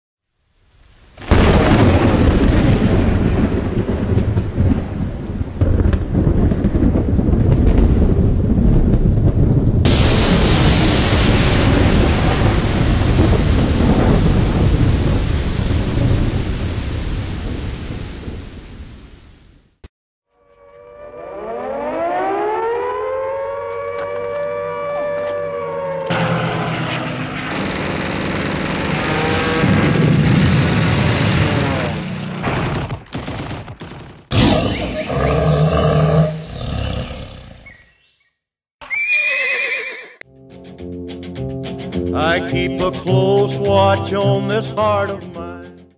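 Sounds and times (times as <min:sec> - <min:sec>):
rolling thunder rumble: 0:01.2 - 0:19.2, 0:24.5 - 0:37.0
hiss: 0:09.9 - 0:19.1
loud animal roar: 0:29.0 - 0:30.0, 0:34.3 - 0:37.7.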